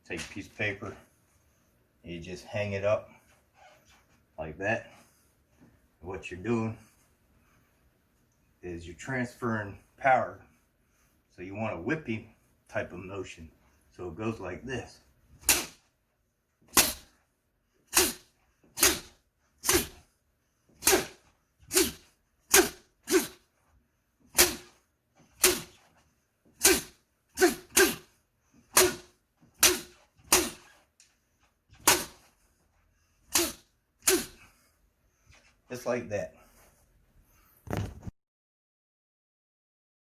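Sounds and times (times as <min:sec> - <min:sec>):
paper snapping under whipping strikes: 0:15.4 - 0:15.8, 0:16.7 - 0:17.0, 0:18.8 - 0:19.1, 0:29.6 - 0:30.6, 0:31.8 - 0:32.2.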